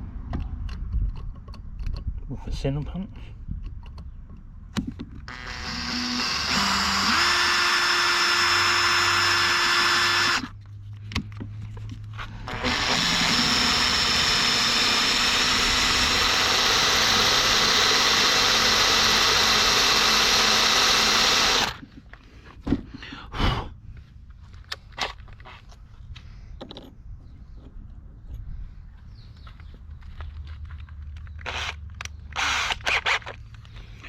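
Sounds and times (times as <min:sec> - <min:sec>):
electric drill whining: 0:05.3 - 0:10.5, 0:12.4 - 0:21.8, 0:31.4 - 0:33.4.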